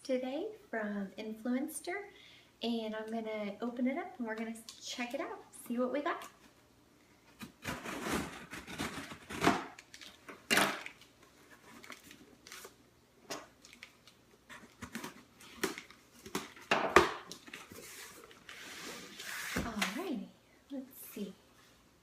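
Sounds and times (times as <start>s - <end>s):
cardboard tearing and rustling: 7.4s - 10.2s.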